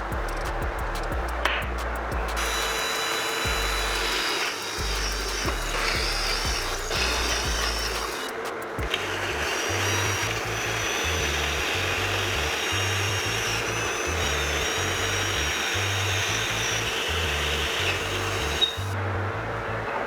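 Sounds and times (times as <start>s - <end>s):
background music with bass line: 0.0s - 8.2s
power tool whining: 2.1s - 19.0s.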